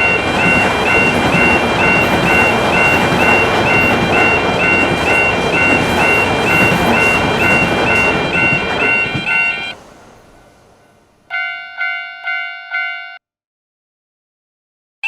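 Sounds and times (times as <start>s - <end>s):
level crossing warning bell: 0.0s - 9.9s, 11.3s - 13.2s.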